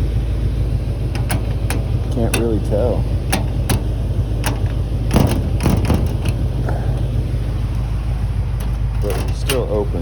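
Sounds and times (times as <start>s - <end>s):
steady low rumble: 0.0s - 10.0s
metal door knocks and clunks: 1.1s - 2.5s, 3.2s - 6.6s.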